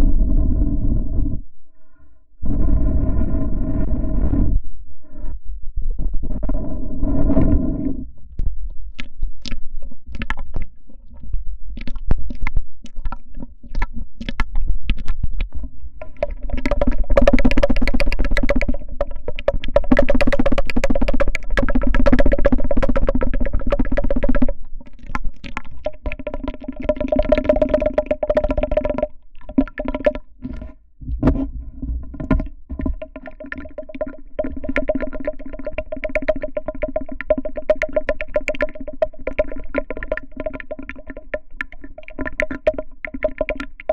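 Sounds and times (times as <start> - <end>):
sharp clicks and taps: 8.4 - 11.2, 11.8 - 43.9.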